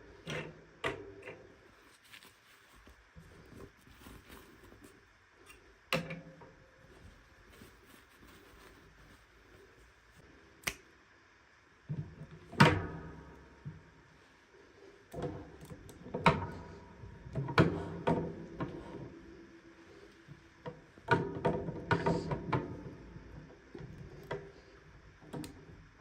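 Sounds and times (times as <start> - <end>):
rustling of toy packaging: 1.7 - 5.0, 6.8 - 10.1.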